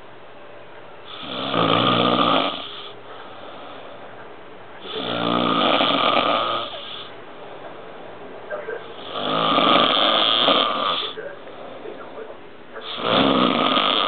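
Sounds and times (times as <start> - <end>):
person snoring: 1.1 - 3.0, 4.8 - 7.1, 9.0 - 11.2, 12.8 - 14.0
quiet breathing: 2.5 - 8.0, 8.7 - 14.0.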